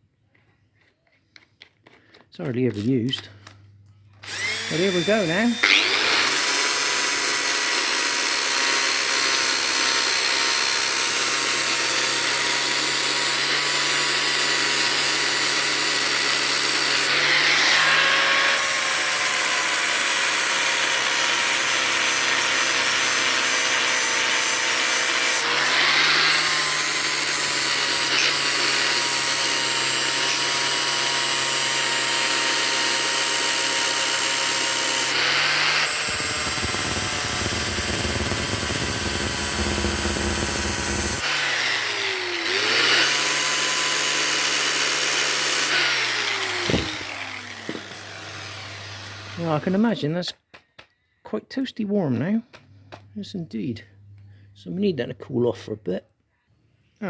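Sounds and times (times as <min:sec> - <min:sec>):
power tool whine: 0:04.2 - 0:49.8.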